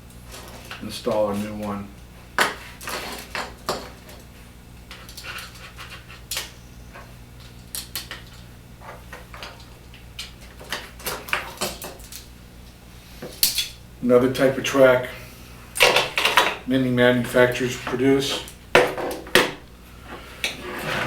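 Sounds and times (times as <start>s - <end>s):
low electrical hum: 0.0s - 21.0s
plastic blind parts clicking: 7.4s - 8.5s.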